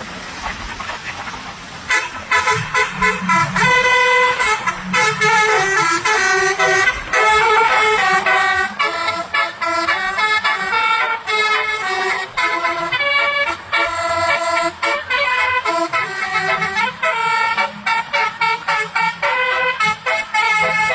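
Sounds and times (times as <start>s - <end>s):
multi-tone bus horn melody: 1.9s - 20.9s.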